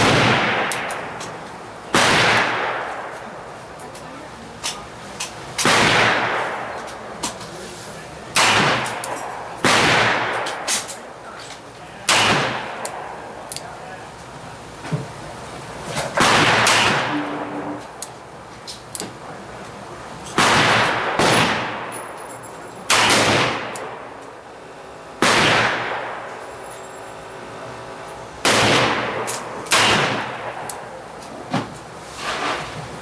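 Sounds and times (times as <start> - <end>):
fainter gunshots: 0.0 - 1.2, 1.9 - 3.2, 5.6 - 6.7, 8.3 - 10.9, 12.1 - 13.1, 16.2 - 17.7, 20.4 - 21.9, 22.9 - 24.1, 25.2 - 26.4, 28.4 - 30.8.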